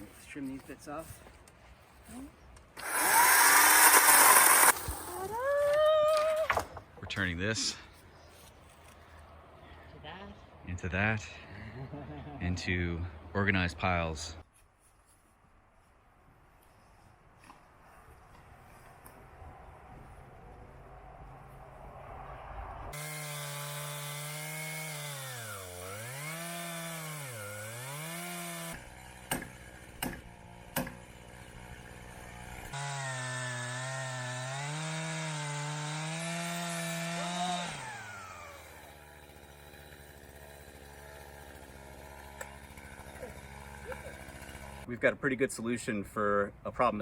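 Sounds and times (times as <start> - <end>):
chainsaw idling: 2.8 - 5.1, 23.0 - 44.9
chainsaw cutting log: 2.8 - 5.4, 22.9 - 44.9.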